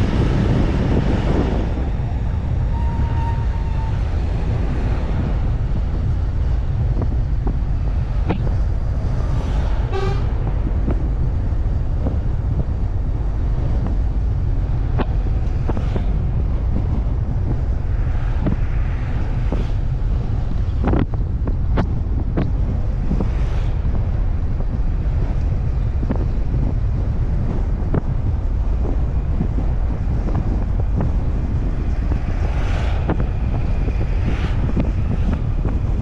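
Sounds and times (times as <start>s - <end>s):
road and wind rumble: 0.0s - 36.0s
vehicle horn toot: 9.9s - 10.3s.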